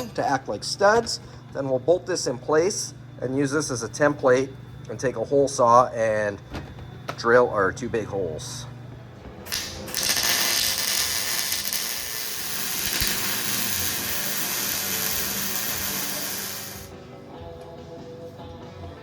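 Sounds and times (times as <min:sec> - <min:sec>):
welding hiss: 0:09.5 - 0:16.9.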